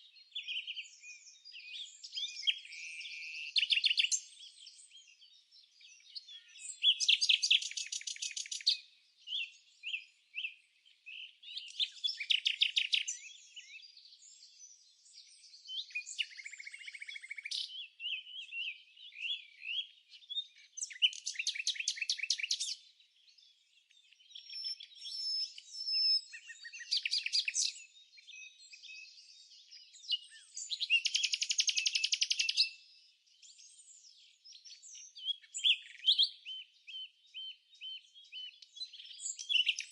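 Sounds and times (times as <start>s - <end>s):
bird chirps and whistles: 24.4s - 27.8s, 30.0s - 32.8s, 34.9s - 37.1s, 37.9s - 39.9s.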